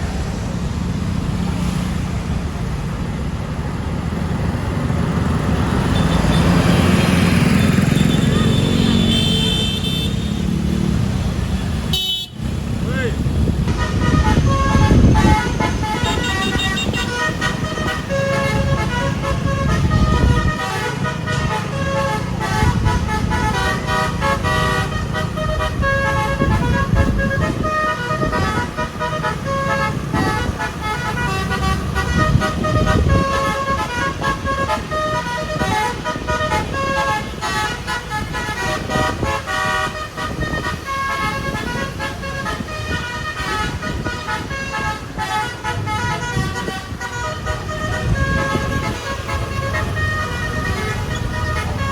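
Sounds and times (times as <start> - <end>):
bus horn playing a tune: 5.3 - 12.7, 13.3 - 51.9
voices: 11.5 - 51.9.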